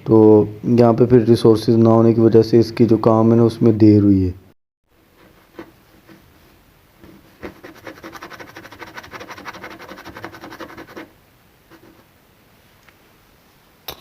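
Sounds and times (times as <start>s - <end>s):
sandpaper scraping body filler: 5.0s - 6.3s, 7.0s - 12.1s.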